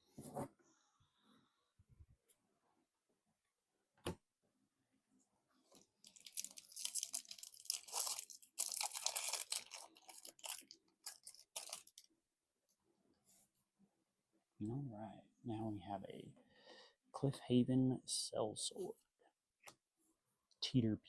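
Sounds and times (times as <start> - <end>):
foil wrapper tearing and crinkling: 6.0 - 12.1.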